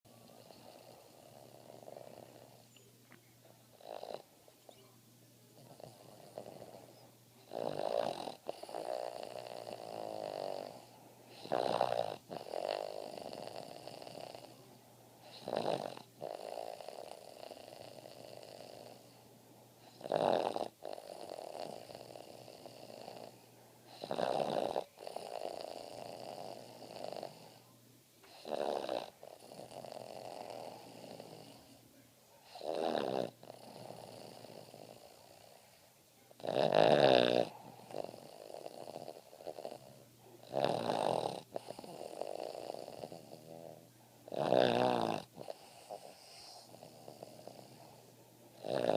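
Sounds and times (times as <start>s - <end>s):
dog snoring: 0.1s - 2.8s, 3.7s - 4.8s, 5.6s - 19.2s, 19.8s - 31.8s, 32.4s - 35.8s, 36.4s - 48.9s.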